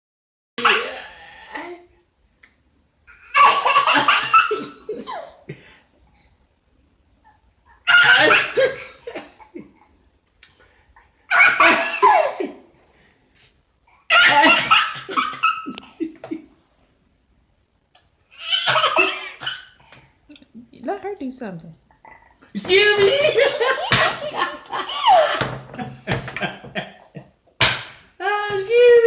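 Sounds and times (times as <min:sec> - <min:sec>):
people laughing: 0:22.6 - 0:27.2.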